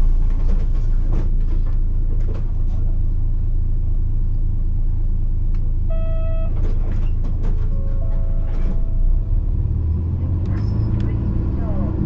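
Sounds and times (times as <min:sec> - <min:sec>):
bus diesel engine rumbling: 0:00.0 - 0:12.0
short electronic beep: 0:05.9 - 0:06.6.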